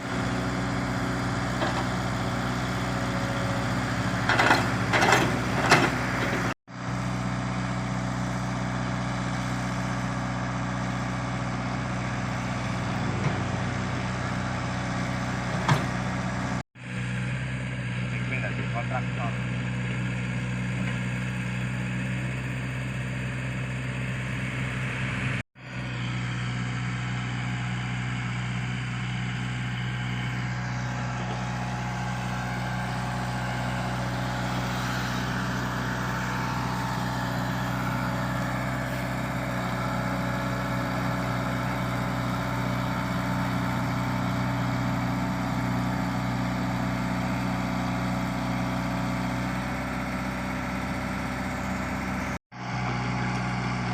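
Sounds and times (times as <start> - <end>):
excavator diesel engine running: 0.0 - 53.9.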